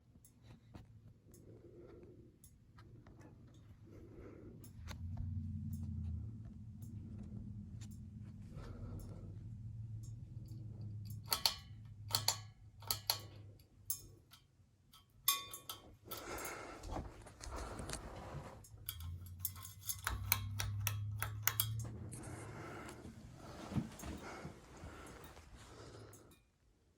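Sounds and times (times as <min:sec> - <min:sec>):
ceiling fan motor hum: 0:00.0 - 0:26.5
sharp irregular clicks: 0:10.0 - 0:16.6, 0:18.9 - 0:22.2.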